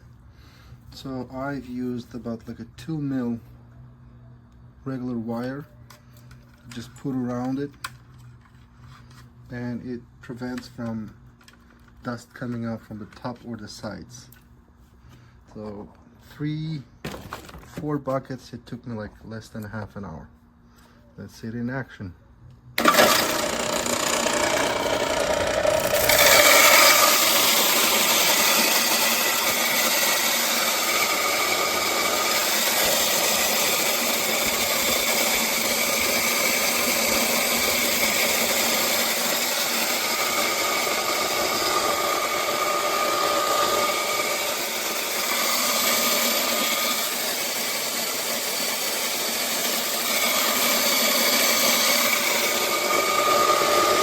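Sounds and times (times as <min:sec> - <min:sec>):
electric grain grinder whirring: 0:22.8 - 0:54.0.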